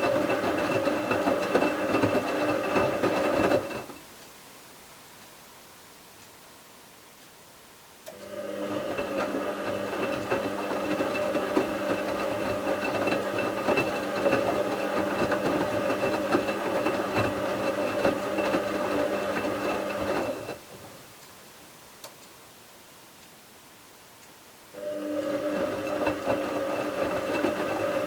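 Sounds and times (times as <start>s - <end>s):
washing machine motor whine: 0.0s - 3.9s, 8.1s - 20.7s, 24.7s - 28.0s.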